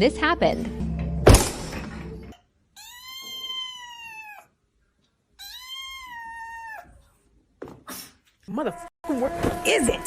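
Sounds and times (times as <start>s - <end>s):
cat meowing: 2.8s - 4.6s, 5.3s - 7.0s.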